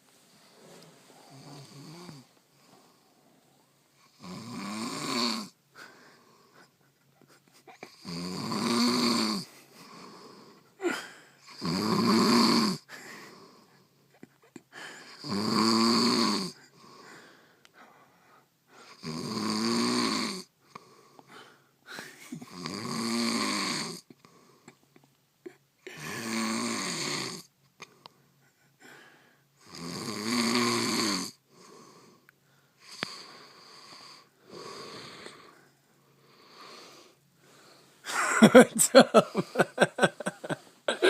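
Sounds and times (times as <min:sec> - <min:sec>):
soft breathing: 0:00.0 - 0:04.0, 0:05.7 - 0:07.9, 0:16.5 - 0:19.0, 0:20.6 - 0:22.4, 0:27.8 - 0:29.6, 0:31.5 - 0:38.1
person snoring: 0:00.4 - 0:02.7, 0:04.0 - 0:05.6, 0:07.8 - 0:13.7, 0:14.9 - 0:17.1, 0:18.8 - 0:20.5, 0:22.3 - 0:24.1, 0:25.9 - 0:27.5, 0:29.6 - 0:32.2, 0:32.8 - 0:35.7, 0:36.3 - 0:41.0.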